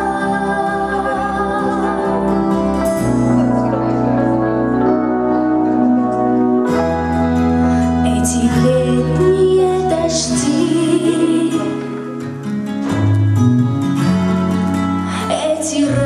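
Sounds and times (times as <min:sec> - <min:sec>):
woman singing slow song: 0:00.0 - 0:03.7, 0:07.8 - 0:12.3, 0:15.1 - 0:16.0
sustained instrumental chords: 0:00.0 - 0:16.0.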